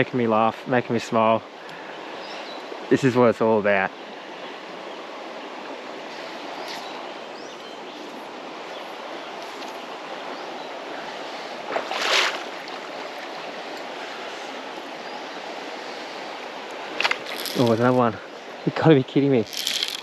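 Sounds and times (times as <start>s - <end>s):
creek water rushing: 0.0s - 20.0s.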